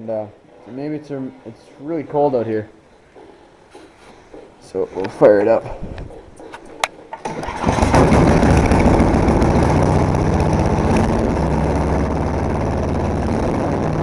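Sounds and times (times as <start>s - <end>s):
snowblower engine running: 7.2s - 14.0s.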